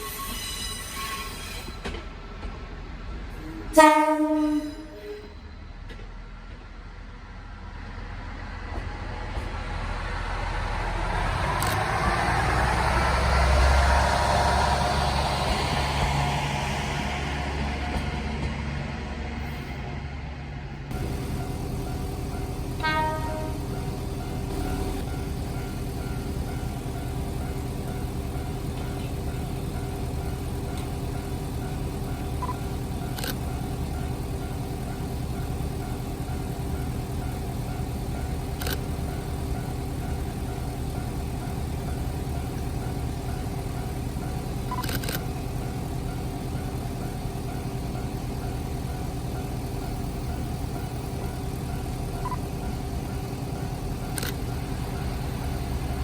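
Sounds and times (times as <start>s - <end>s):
railcar diesel engine running: 0.0s - 56.0s
camera beep: 44.7s - 45.3s.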